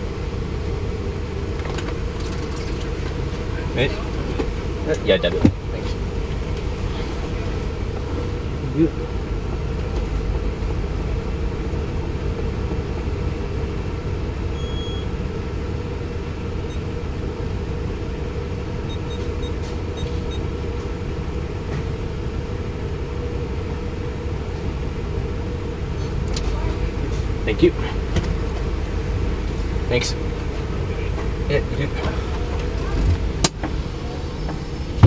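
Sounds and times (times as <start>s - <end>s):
faint hum: 0.0s - 35.0s
low mechanical rumble: 0.0s - 35.0s
faint high-pitched beeps: 14.6s - 15.1s, 18.9s - 20.4s.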